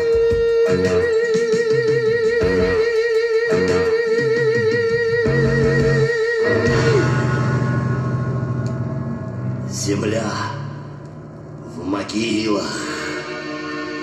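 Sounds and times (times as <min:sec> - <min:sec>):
rock music from vinyl record: 0:00.0 - 0:09.8.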